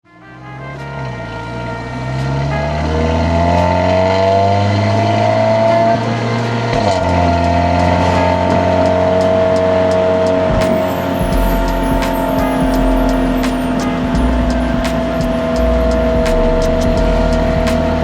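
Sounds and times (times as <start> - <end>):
car engine accelerating: 1.9 - 18.0
gear change: 6.7 - 18.0.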